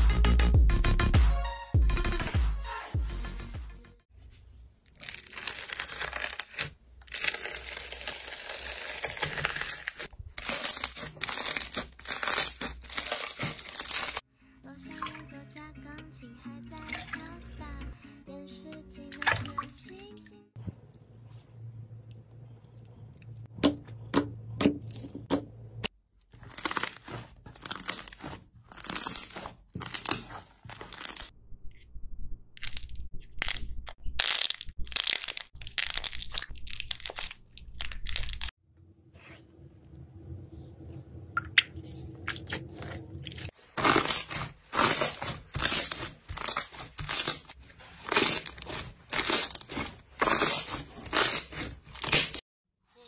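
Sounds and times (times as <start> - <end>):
crunchy slime crackling: 4.9 - 14.2, 26.3 - 31.3, 32.6 - 38.5, 42.4 - 52.4.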